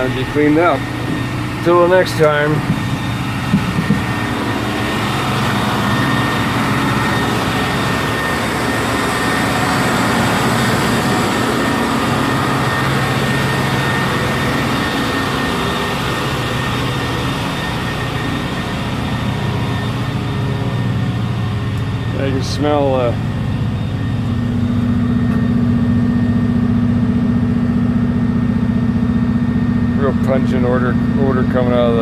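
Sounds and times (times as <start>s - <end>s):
diesel engine running: 0.0s - 32.0s
thin steady whine: 0.0s - 32.0s.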